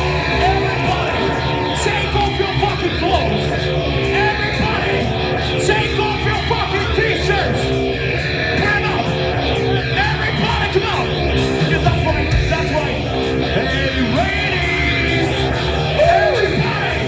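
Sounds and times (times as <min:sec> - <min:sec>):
live metal band playing: 0:00.0 - 0:17.0
person yelling vocals: 0:15.9 - 0:17.0.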